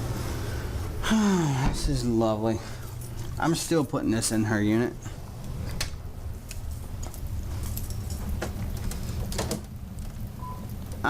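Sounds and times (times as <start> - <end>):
air conditioning unit humming: 0.0 - 11.0.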